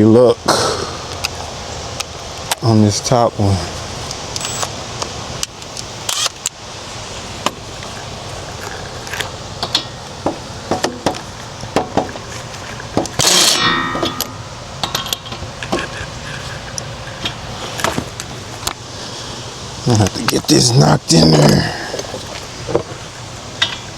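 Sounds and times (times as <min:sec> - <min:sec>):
rasping metal scrape: 0:13.2 - 0:14.5
metal tools clinking: 0:13.2 - 0:16.7.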